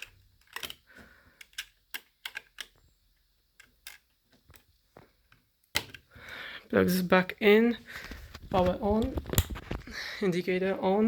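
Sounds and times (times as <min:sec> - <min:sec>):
small clicks and taps on circuit board: 0:01.4 - 0:02.8.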